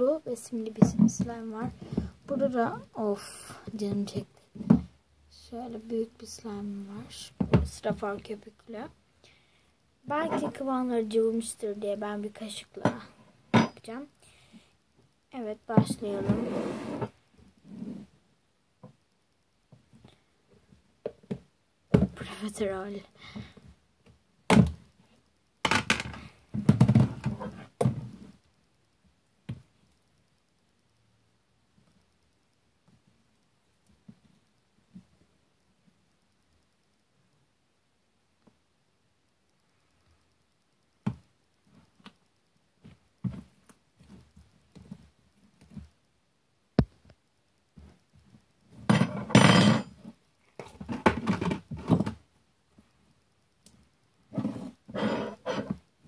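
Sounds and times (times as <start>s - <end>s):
clattering and scraping handling noise: 0.7s - 2.6s, 10.1s - 10.6s, 25.7s - 28.4s, 48.7s - 52.2s, 54.3s - 55.8s.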